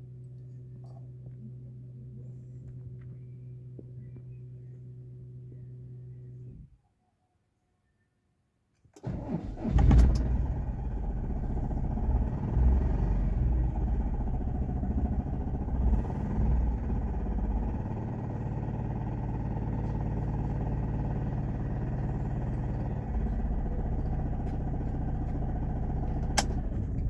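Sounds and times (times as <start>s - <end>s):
diesel engine idling: 9.0s - 27.0s.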